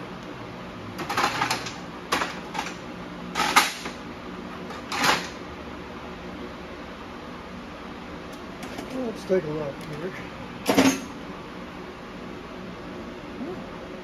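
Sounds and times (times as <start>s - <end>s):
metal engine parts clattering: 1.0s - 2.8s, 10.6s - 11.2s.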